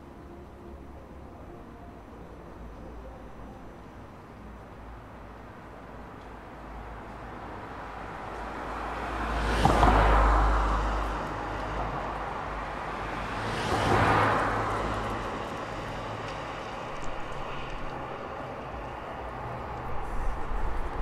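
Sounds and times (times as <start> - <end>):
cars driving past: 6.7 - 21.0.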